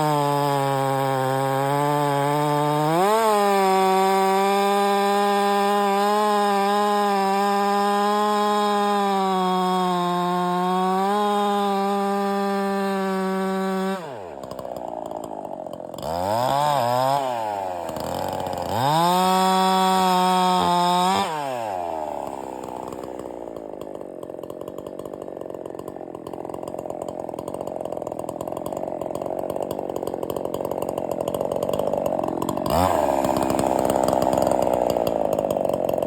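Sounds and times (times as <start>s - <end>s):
chainsaw revving and idling: 0.0s - 36.0s.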